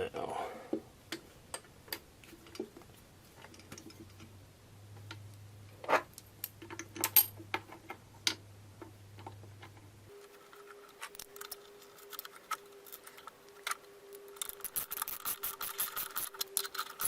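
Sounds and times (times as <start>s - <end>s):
metal parts clicking and clinking: 6.1s - 8.4s, 9.2s - 17.0s.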